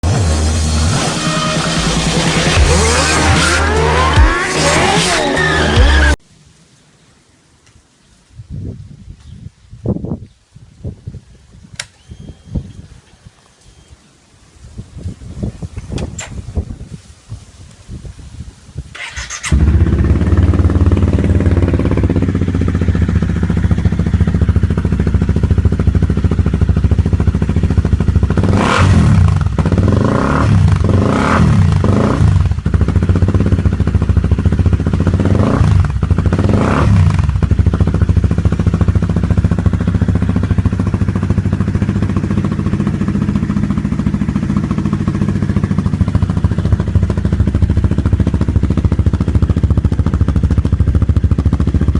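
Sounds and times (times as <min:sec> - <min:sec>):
motorcycle engine idling: 0:19.0 - 0:51.9.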